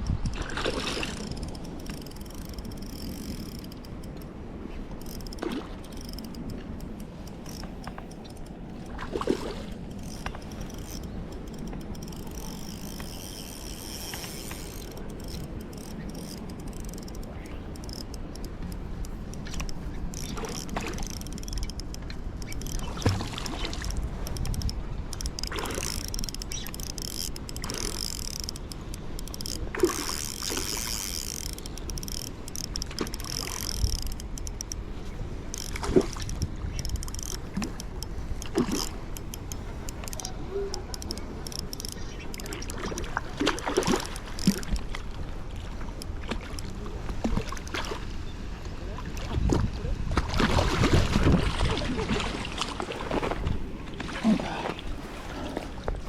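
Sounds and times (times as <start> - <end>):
spinning reel ratcheting: 0.0 - 4.3, 4.9 - 8.6, 9.9 - 34.8, 35.5 - 44.9
wind rumble on microphone: 0.0 - 56.0.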